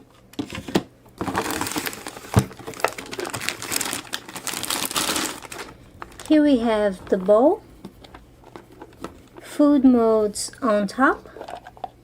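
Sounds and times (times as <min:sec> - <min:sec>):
plastic packaging crinkling: 0:01.2 - 0:09.6.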